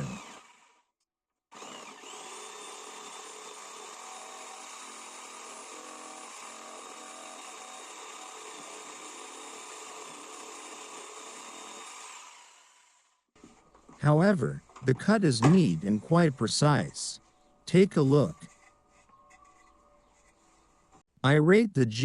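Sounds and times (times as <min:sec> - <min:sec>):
electric jigsaw cutting wood: 0:00.0 - 0:13.3.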